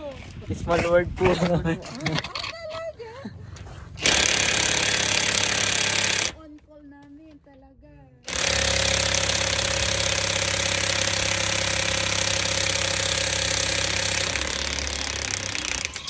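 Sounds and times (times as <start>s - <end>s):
air impact wrench rattling: 4.0s - 6.4s, 8.3s - 16.0s.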